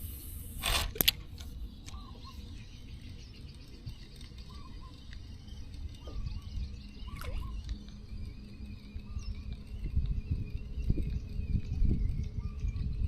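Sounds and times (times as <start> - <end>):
sharp click: 0.6 - 2.0
faint bird chirps: 1.6 - 13.0.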